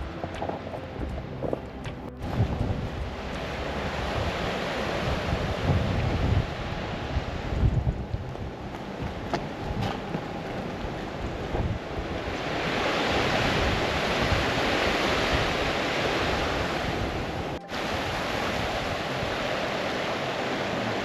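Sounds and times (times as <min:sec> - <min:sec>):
stream rushing: 0:00.0 - 0:21.0
wind buffeting microphone: 0:00.0 - 0:21.0.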